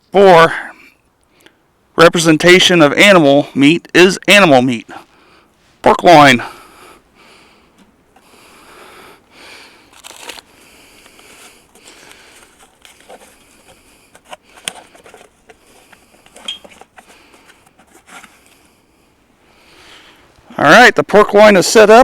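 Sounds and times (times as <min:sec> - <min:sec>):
wrapping rustling and crinkling: 0:09.6 - 0:18.7.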